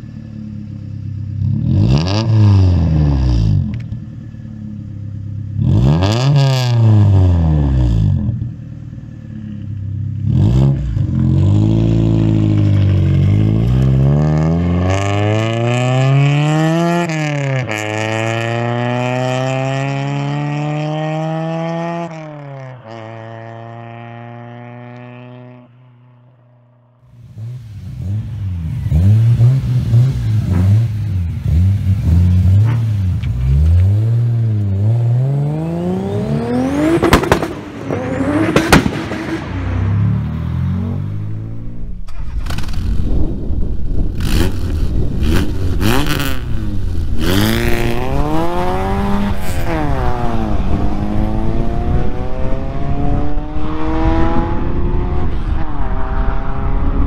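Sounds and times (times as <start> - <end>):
car engine revving: 0.0 - 26.2, 27.0 - 57.0
exhaust cracks: 36.0 - 51.1.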